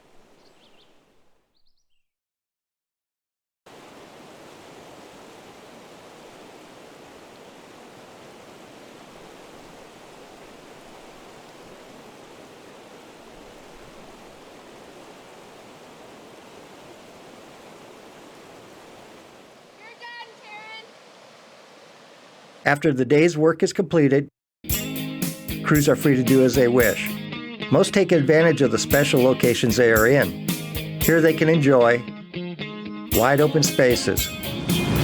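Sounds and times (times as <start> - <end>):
river water rushing: 3.7 - 22.7.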